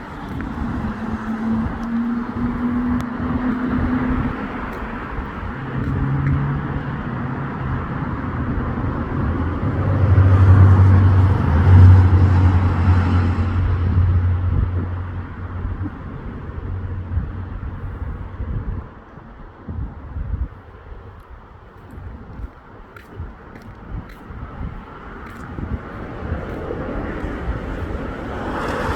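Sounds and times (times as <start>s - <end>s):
heavy vehicle engine hum: 0.0s - 28.9s
road traffic passing: 0.0s - 28.9s.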